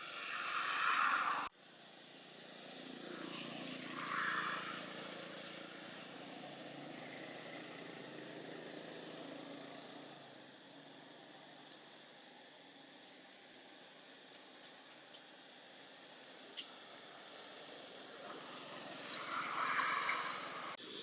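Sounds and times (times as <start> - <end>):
motor vehicle passing: 2.6 - 11.0, 16.8 - 21.0.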